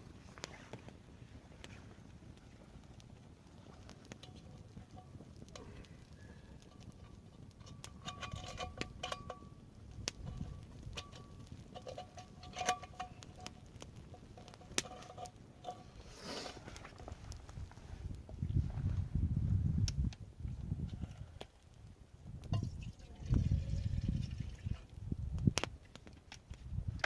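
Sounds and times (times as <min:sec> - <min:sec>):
metal pot knocks and clinks: 0:06.7 - 0:09.5, 0:10.2 - 0:13.6, 0:22.5 - 0:24.5.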